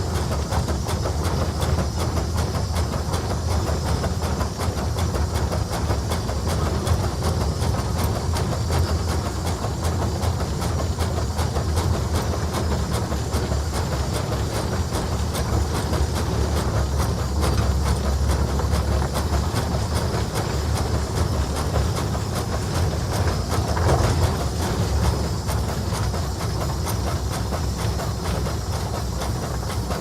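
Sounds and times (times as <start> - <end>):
steam engine exhaust chuffing: 0.0 - 30.0.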